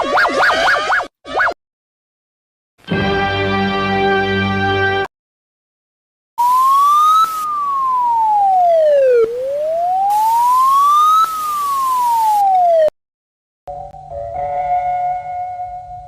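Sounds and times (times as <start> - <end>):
alarm siren wailing: 6.4 - 12.9
steady hiss: 9.4 - 12.5.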